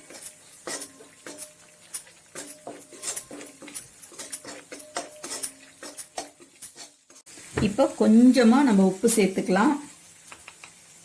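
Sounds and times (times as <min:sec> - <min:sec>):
spoon scraping and clinking pan: 0:00.0 - 0:07.3
paste frying: 0:00.0 - 0:11.0.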